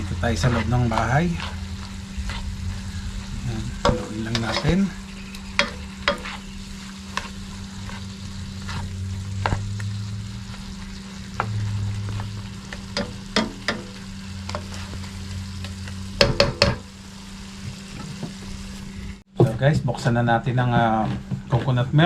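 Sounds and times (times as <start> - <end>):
utensil scraping in a pot: 0.0 - 16.0
steady low hum: 0.0 - 22.0.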